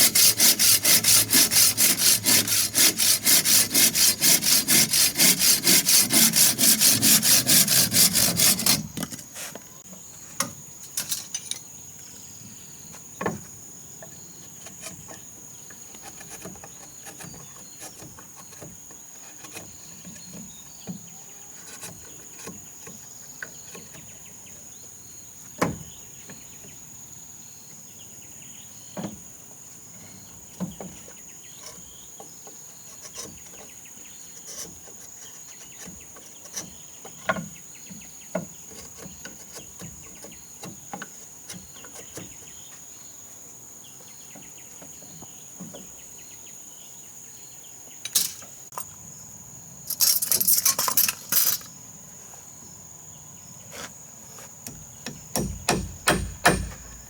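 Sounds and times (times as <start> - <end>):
rapid scraping strokes: 0.0 - 9.6
insects droning: 0.0 - 57.0
wood and tools knocking: 34.5 - 42.5, 48.1 - 48.9, 53.7 - 57.0.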